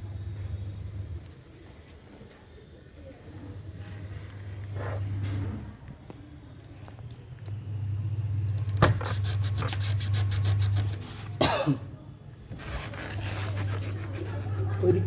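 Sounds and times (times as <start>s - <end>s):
steady low hum: 0.0s - 12.4s
rubbing and scraping: 8.9s - 11.4s, 12.5s - 15.0s.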